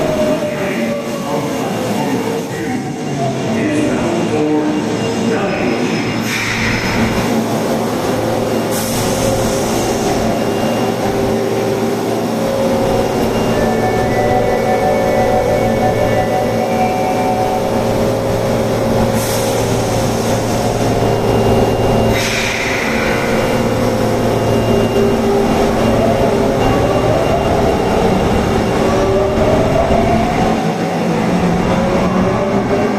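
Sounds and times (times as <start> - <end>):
subway train electrical hum: 0.0 - 32.9.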